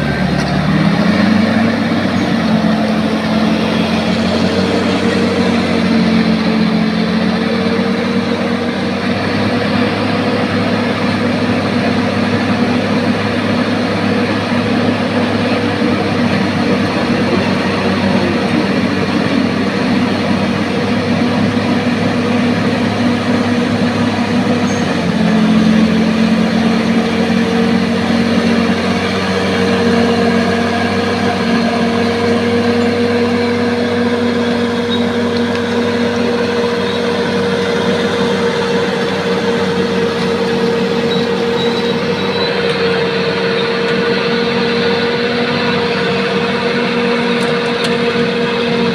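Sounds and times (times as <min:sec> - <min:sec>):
bulldozer diesel engine running: 0:00.0 - 0:48.9.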